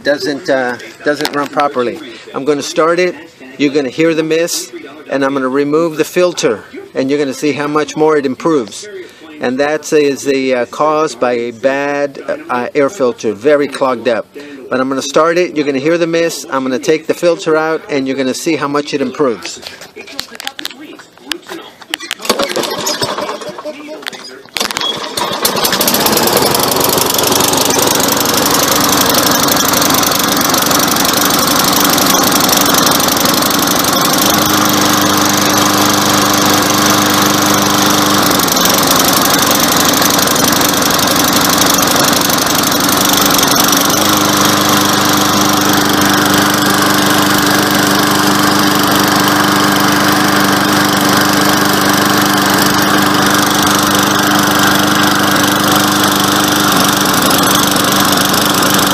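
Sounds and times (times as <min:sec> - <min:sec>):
lawn mower engine running: 0:00.0 - 0:03.1, 0:22.2 - 0:23.8, 0:24.6 - 0:58.9.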